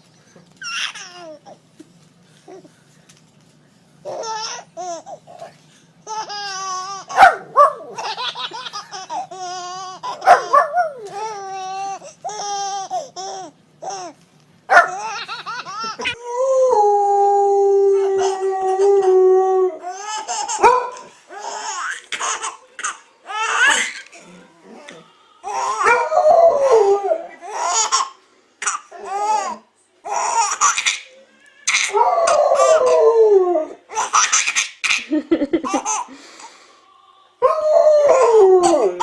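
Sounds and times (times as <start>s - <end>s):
baby laughing and squealing: 0.6s - 1.6s, 4.1s - 5.5s, 6.1s - 7.2s, 7.8s - 14.2s, 14.8s - 16.2s, 19.8s - 20.7s, 33.9s - 36.1s
dog barking: 7.1s - 8.0s, 10.2s - 11.0s, 14.7s - 15.0s, 20.6s - 21.0s.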